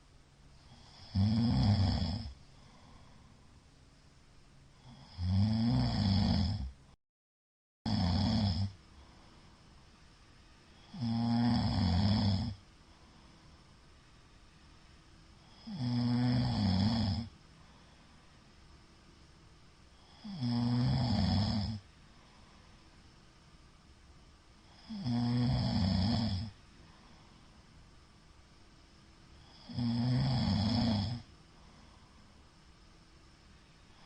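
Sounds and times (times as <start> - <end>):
quiet breathing: 0.0 - 7.0, 8.0 - 34.0
man snoring loudly: 0.7 - 2.4, 4.8 - 6.8, 7.9 - 8.8, 10.8 - 12.6, 15.4 - 17.3, 20.0 - 21.8, 24.7 - 26.6, 29.4 - 31.3.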